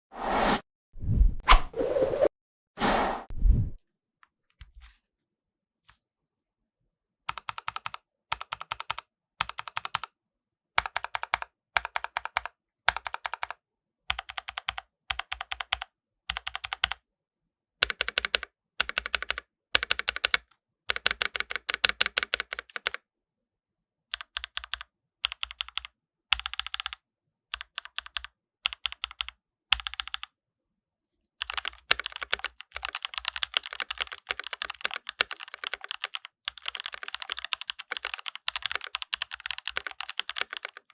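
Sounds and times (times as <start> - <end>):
mechanical keyboard typing: 7.3 - 10.1, 10.8 - 17.0, 17.8 - 23.0, 24.1 - 27.0, 27.6 - 30.3, 31.4 - 40.9.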